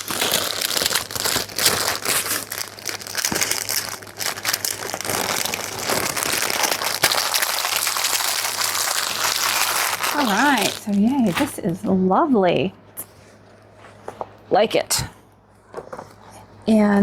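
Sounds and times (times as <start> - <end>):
plastic packaging crinkling: 0.0 - 11.8.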